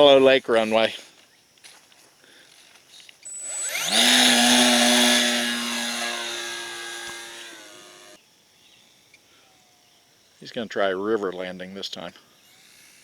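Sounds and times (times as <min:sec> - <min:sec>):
model plane motor whine: 0:03.3 - 0:08.2.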